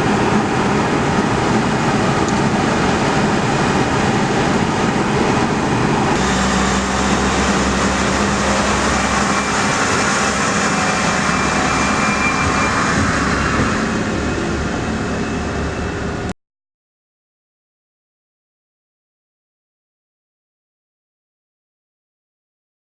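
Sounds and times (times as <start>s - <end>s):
train running: 0.0s - 16.3s.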